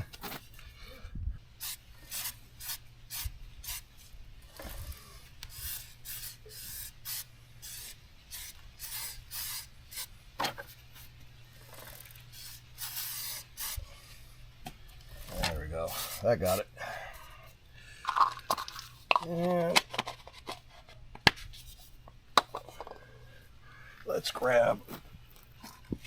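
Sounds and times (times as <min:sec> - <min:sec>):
aerosol can spraying: 0:01.6 - 0:03.9, 0:05.5 - 0:10.1, 0:12.3 - 0:13.8.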